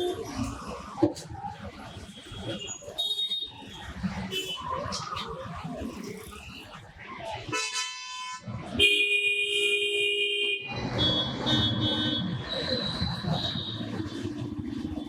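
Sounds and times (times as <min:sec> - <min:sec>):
traffic noise: 0:00.0 - 0:15.0
vehicle horns: 0:04.3 - 0:04.7, 0:07.5 - 0:12.6.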